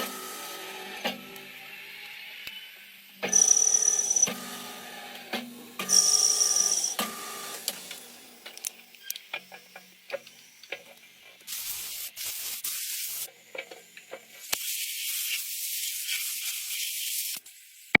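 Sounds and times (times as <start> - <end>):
lathe hiss: 11.5 - 13.3, 14.4 - 17.8.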